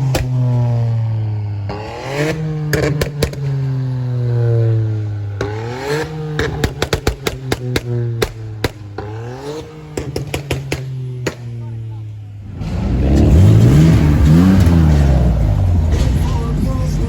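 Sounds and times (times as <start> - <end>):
sharp exhaust pops and cracks: 0.0 - 0.8, 1.7 - 3.8, 5.4 - 11.8
car engine revving: 0.0 - 17.0.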